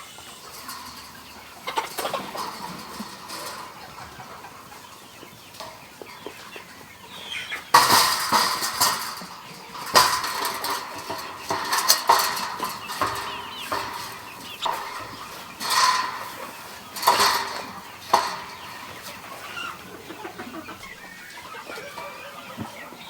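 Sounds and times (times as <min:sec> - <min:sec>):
chickens clucking: 0:00.0 - 0:23.0
loud clattering knocks: 0:00.5 - 0:04.8, 0:07.7 - 0:19.4.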